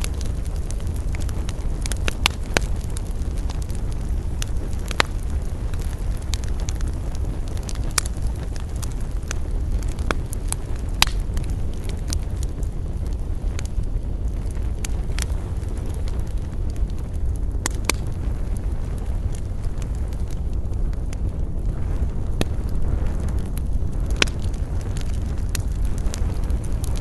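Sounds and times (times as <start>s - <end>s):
campfire burning: 0.0s - 27.0s
wood crackling and popping: 0.0s - 27.0s.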